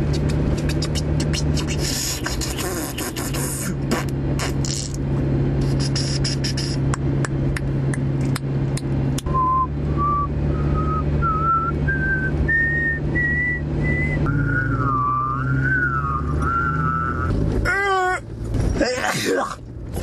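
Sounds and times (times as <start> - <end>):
car cabin hum: 5.0 - 20.0
person whistling a rising scale: 9.3 - 17.4.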